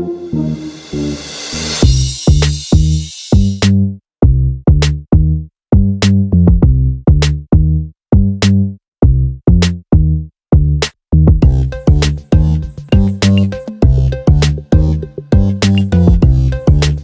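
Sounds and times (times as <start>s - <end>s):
deep bass notes: 0.0s - 17.0s
fast hi-hat ticks: 1.6s - 3.5s, 11.4s - 17.0s
electronic music with drum machine: 11.4s - 17.0s.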